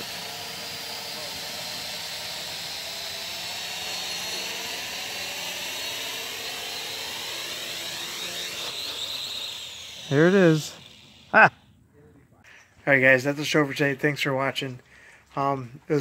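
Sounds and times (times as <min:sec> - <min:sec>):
drone propellers whirring: 0:00.0 - 0:11.8.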